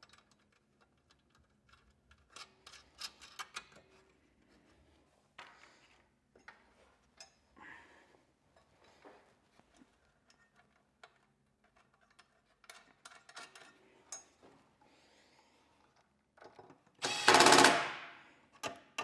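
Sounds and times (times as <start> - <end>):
small parts clicking and tapping: 0.0 - 3.9, 18.6 - 19.0
power driver hammering: 17.0 - 18.2.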